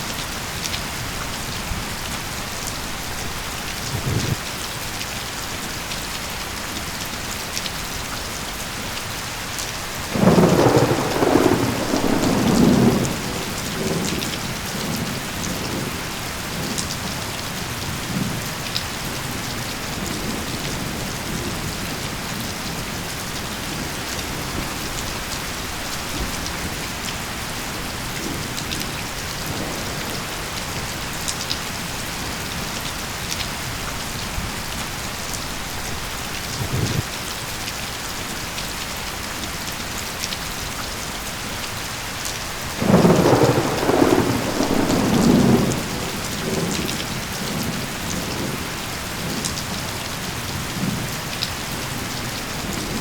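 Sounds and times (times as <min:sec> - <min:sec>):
steady rain falling: 0:00.0 - 0:53.0
thunder rumbling: 0:10.1 - 0:17.2, 0:42.8 - 0:49.9.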